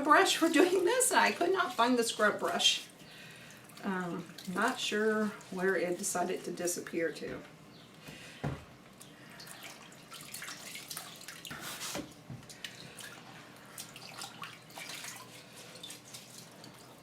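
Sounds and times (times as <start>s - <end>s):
water splashing in a sink: 3.4s - 6.0s, 9.3s - 17.0s.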